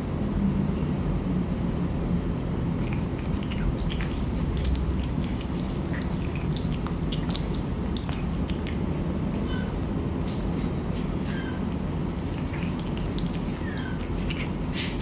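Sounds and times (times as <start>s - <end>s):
steady low rumble: 0.0s - 15.0s
cat crunching food: 2.3s - 15.0s.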